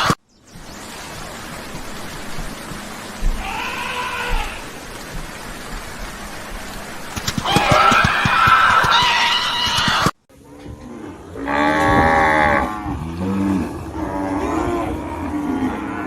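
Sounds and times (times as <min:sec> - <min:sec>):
steady hiss: 0:00.0 - 0:10.0
animal call: 0:03.4 - 0:04.8, 0:07.2 - 0:10.1.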